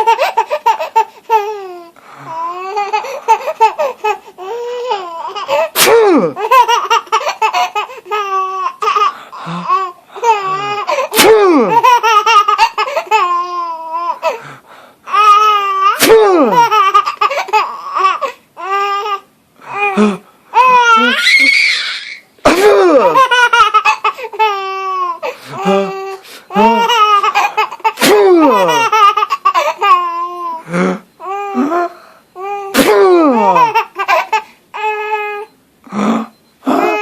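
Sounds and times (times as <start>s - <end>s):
baby laughing: 0.0s - 14.4s, 15.1s - 20.0s, 20.6s - 30.6s, 32.6s - 35.1s
sharp sneezes: 5.7s - 6.4s, 11.1s - 11.8s, 16.0s - 16.6s, 22.4s - 23.2s, 28.0s - 28.6s, 32.7s - 33.5s.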